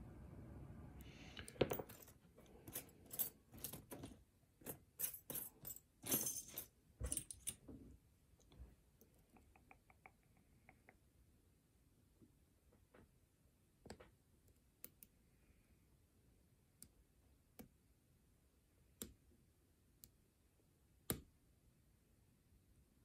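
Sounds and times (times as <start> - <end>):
lock picks clinking and scraping: 1.4 - 7.6.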